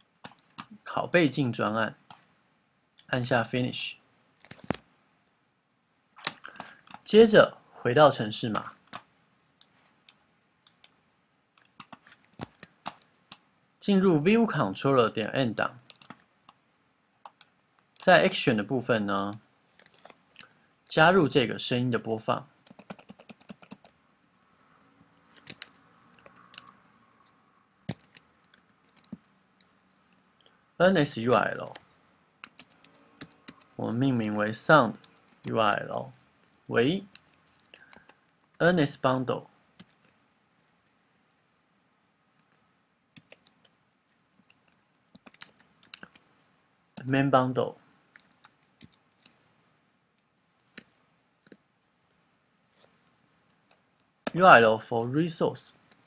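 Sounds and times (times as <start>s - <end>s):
computer keyboard keystrokes: 4.4s - 4.8s, 22.6s - 24.0s, 25.3s - 26.8s, 27.9s - 29.7s, 31.6s - 33.8s, 37.1s - 38.6s, 39.8s - 40.2s, 43.2s - 43.8s, 44.4s - 46.3s, 48.1s - 49.4s.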